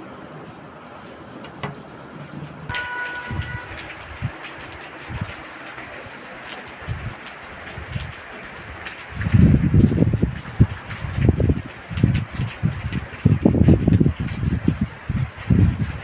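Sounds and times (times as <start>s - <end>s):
steady rain falling: 0.0s - 16.0s
short steady tone: 2.7s - 4.4s.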